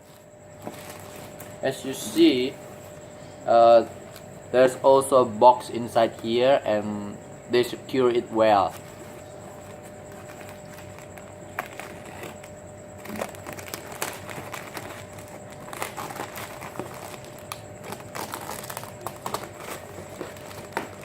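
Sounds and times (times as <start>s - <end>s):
packaging crinkling and rustling: 0.0s - 2.2s, 8.6s - 21.0s.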